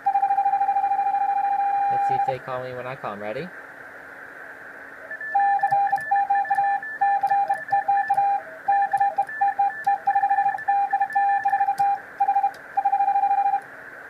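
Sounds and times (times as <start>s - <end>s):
higher-pitched morse code signal: 0.0s - 2.4s, 5.1s - 13.6s
morse code beeps: 0.0s - 2.4s, 5.1s - 13.6s.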